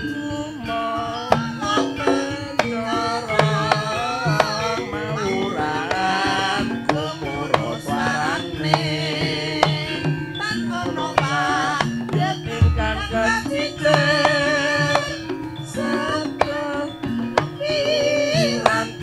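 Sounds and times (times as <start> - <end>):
hand drum beating: 0.0 - 19.0
wavering sustained melody: 12.5 - 16.9
deep low drum stroke: 12.6 - 14.2.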